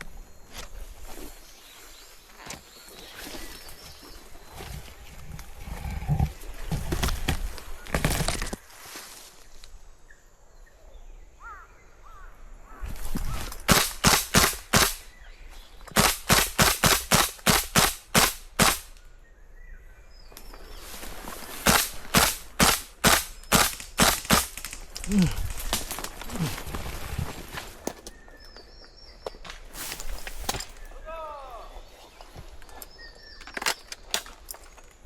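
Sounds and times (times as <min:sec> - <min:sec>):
airsoft guns firing: 0:13.6 - 0:15.1, 0:15.9 - 0:19.0, 0:21.6 - 0:24.8.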